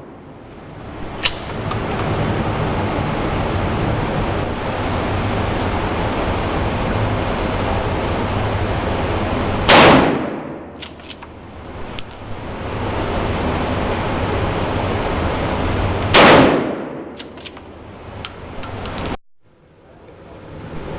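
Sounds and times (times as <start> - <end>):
steady rushing noise: 0.0 - 20.9
gunshot: 9.7 - 11.0, 16.1 - 17.3.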